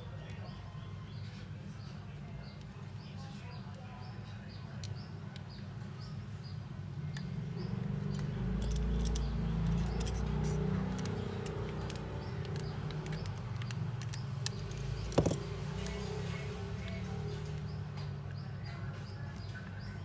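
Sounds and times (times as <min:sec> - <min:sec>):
metal tools clicking and tapping: 0:08.1 - 0:16.0.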